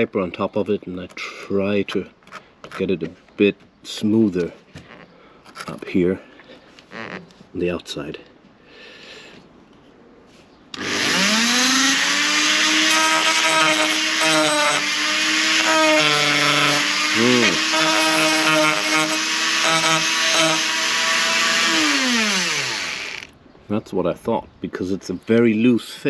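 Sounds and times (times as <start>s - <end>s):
rotary tool sanding metal: 10.8s - 23.3s.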